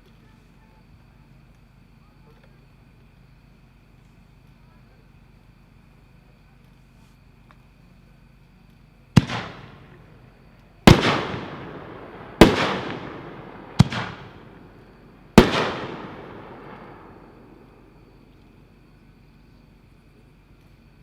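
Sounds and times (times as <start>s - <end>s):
firework shell booms with echo: 9.2s - 10.0s, 10.9s - 18.2s.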